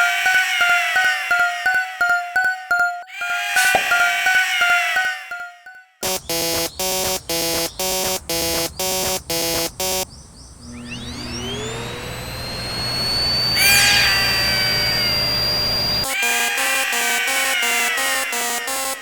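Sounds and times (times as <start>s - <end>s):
low hum: 6.0s - 16.0s
rising whine: 6.0s - 16.2s
level crossing alarm: 6.0s - 19.0s.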